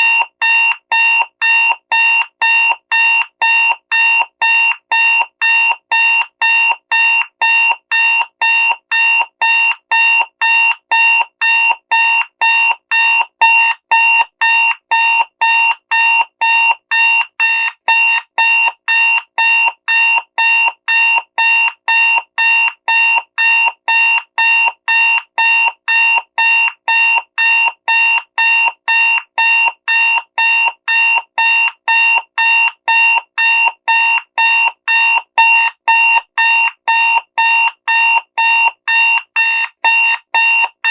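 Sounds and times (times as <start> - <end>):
alarm clock beeping: 0.0 - 40.9.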